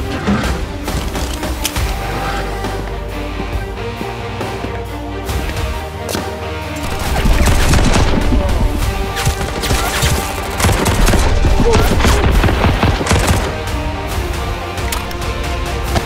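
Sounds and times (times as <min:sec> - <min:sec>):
background music: 0:00.0 - 0:16.0
gunfire bursts: 0:06.8 - 0:13.7.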